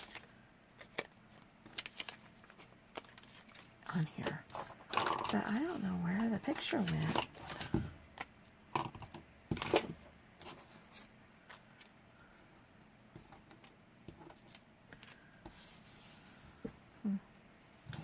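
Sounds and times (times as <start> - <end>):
paper rustling: 0.0 - 3.7.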